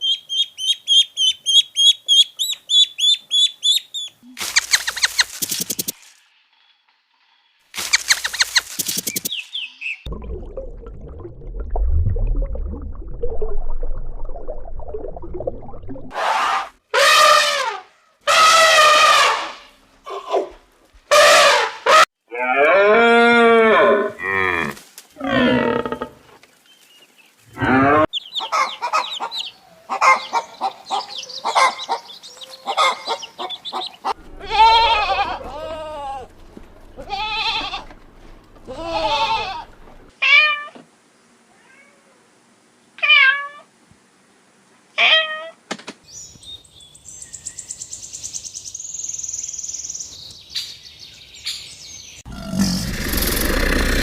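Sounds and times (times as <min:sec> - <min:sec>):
farm animals calling: 0:27.5 - 0:40.1
low rumbling animal: 0:34.2 - 0:40.1, 0:52.3 - 0:54.0.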